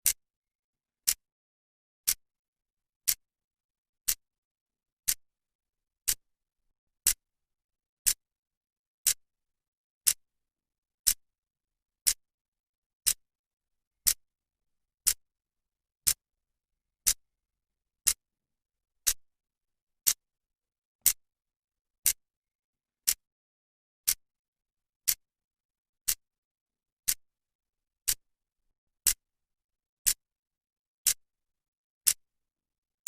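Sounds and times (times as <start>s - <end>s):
clock ticking: 6.0s - 6.2s.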